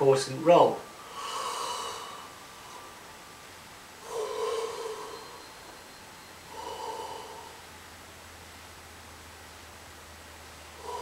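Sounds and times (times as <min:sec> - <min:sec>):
person yawning: 0:04.0 - 0:05.3.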